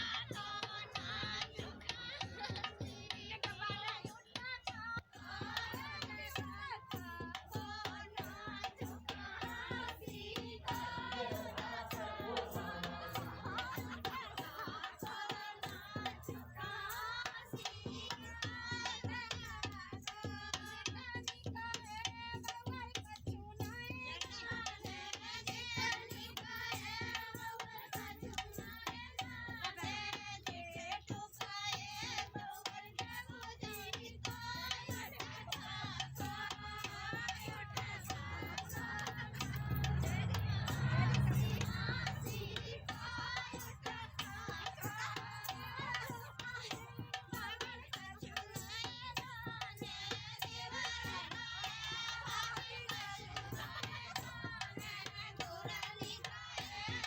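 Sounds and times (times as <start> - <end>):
fast percussion beat: 0.0 - 57.0
person singing folk song: 9.3 - 18.1.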